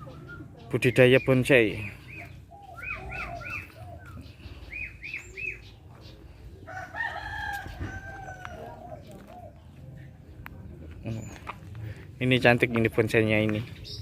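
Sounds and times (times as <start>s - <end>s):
long bird call: 0.0s - 5.7s
birds chirping: 0.0s - 14.0s.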